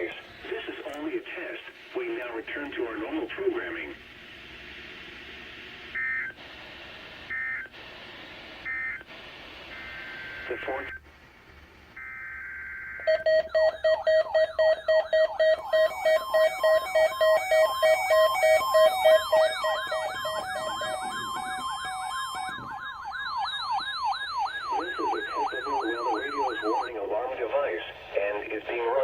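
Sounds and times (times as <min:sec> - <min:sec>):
radio data tones: 0:00.0 - 0:04.0, 0:05.9 - 0:11.1, 0:11.9 - 0:29.0
falling siren-like alarm sweep: 0:12.0 - 0:26.9
pulsing beeps: 0:13.0 - 0:26.9.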